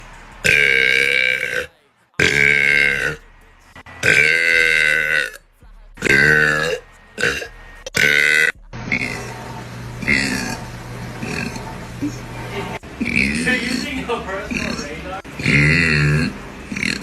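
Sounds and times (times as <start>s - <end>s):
loud belching: 0.4s - 3.2s, 4.0s - 5.4s, 6.0s - 9.4s, 10.0s - 10.6s, 11.2s - 11.6s, 12.8s - 17.0s.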